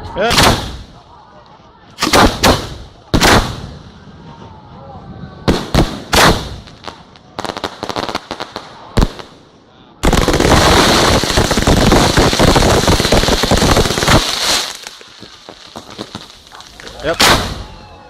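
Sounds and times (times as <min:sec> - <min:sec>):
firework bangs: 0:05.5 - 0:09.4, 0:10.0 - 0:17.8
fireworks crackling: 0:05.5 - 0:09.4, 0:10.0 - 0:17.8.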